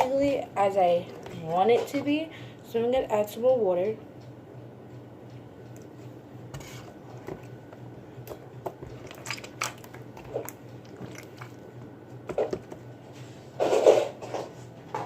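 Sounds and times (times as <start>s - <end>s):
slime squelching: 8.8s - 11.8s.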